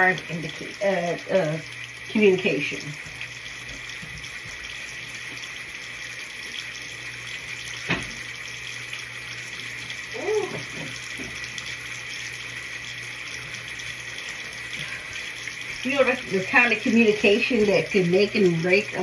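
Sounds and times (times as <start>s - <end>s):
sink tap running: 0.0s - 19.0s.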